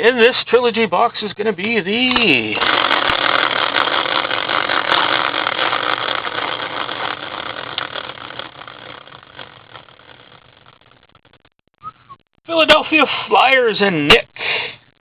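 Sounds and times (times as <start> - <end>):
prize wheel ticking: 2.0 - 11.1.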